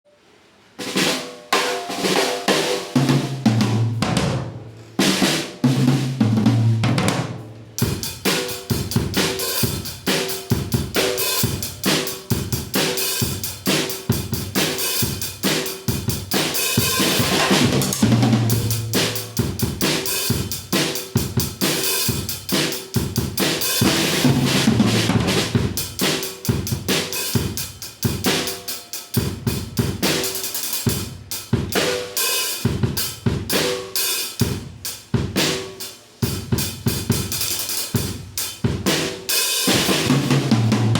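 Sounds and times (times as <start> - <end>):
drum kit beat: 0.7 - 40.9
low tom fills: 16.2 - 21.6.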